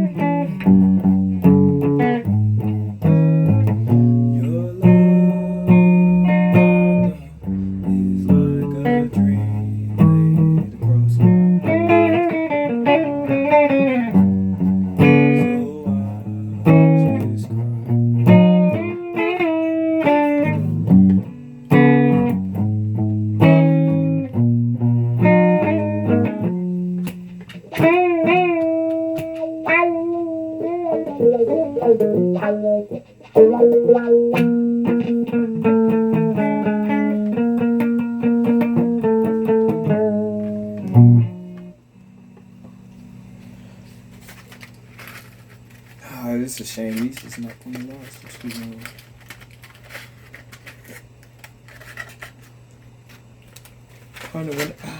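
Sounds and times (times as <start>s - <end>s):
guitar playing plucked notes: 0.0s - 41.8s.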